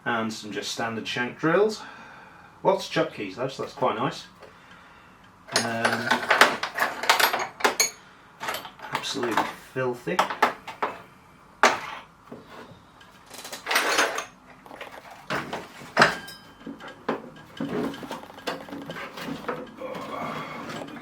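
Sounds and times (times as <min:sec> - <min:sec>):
metal hand tools clinking: 0:05.5 - 0:09.1
rummaging scrape: 0:11.8 - 0:21.0.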